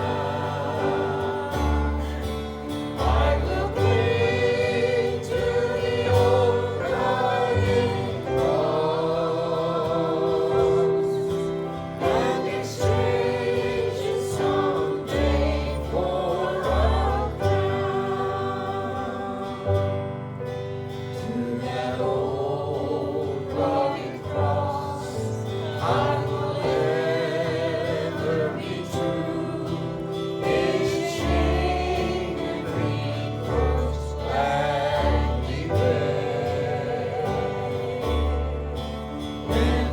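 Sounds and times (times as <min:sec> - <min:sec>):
group singing a hymn: 0:00.0 - 0:39.9.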